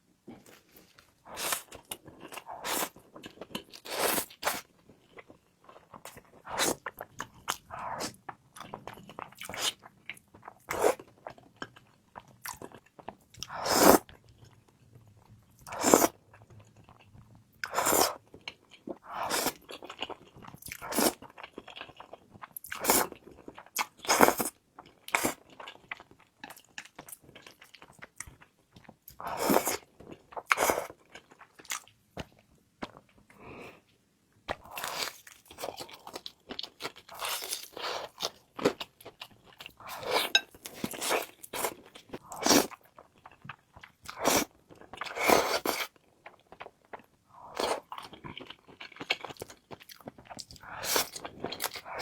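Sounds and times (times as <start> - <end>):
person chewing crunchy food: 34.5 - 52.0.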